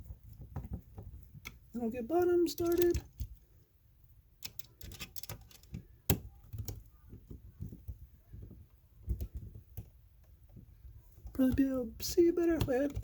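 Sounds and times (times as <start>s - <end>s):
screw clicking and scraping: 4.4s - 5.8s.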